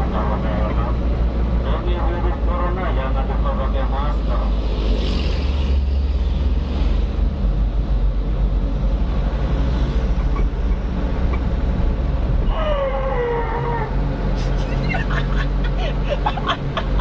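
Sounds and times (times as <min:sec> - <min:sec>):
truck engine running: 0:05.6 - 0:17.0.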